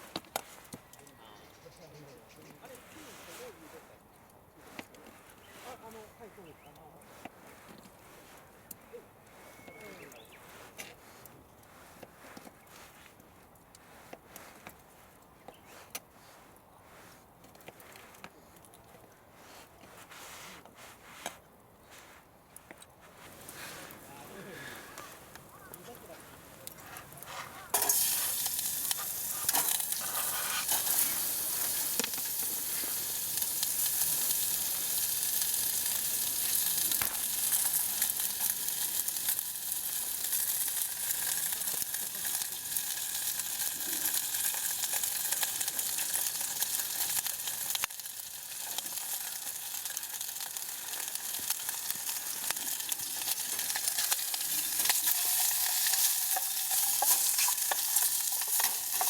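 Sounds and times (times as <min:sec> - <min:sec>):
food sizzling in a frying pan: 0:27.7 - 0:59.0.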